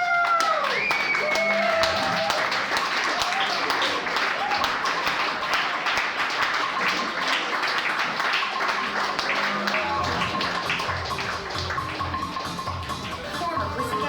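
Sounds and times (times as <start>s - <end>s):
crackling electronic music: 4.1s - 14.0s.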